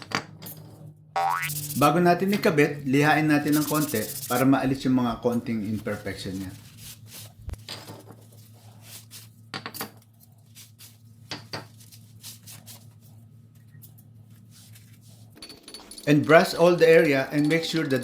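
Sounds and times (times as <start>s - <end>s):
steady low hum: 0.8s - 7.7s.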